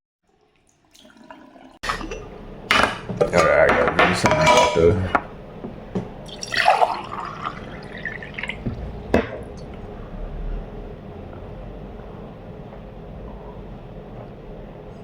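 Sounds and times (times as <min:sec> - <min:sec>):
water sloshing in a glass: 0:00.3 - 0:02.9, 0:06.2 - 0:09.4.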